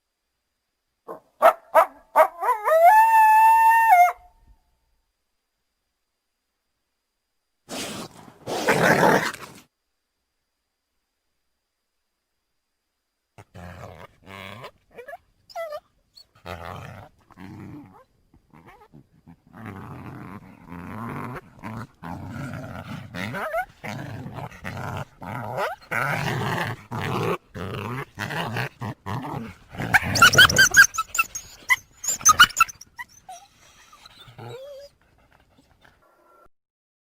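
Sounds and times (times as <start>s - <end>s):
coyote growl-like calls: 13.4s - 36.5s
coyote high-pitched yips: 30.0s - 34.0s.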